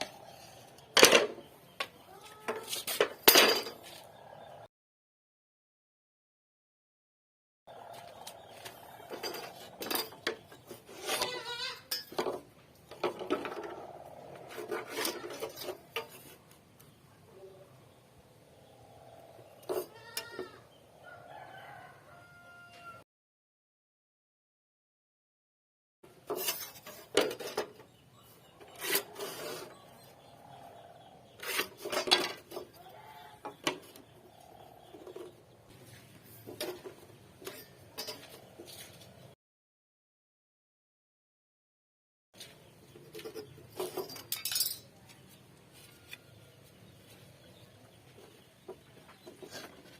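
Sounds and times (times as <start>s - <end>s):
scraping strokes on wood: 7.9s - 12.2s, 13.0s - 16.6s, 28.5s - 34.1s.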